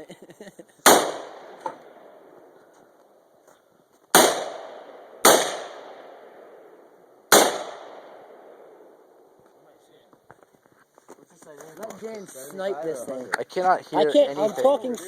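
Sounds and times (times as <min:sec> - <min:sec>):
rifle shots with echo: 0:00.9 - 0:02.1, 0:04.1 - 0:06.6, 0:07.3 - 0:08.8.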